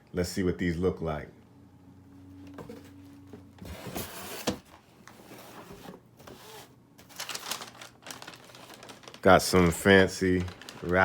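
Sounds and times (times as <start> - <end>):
cardboard lid scraping and sliding: 3.6 - 6.7.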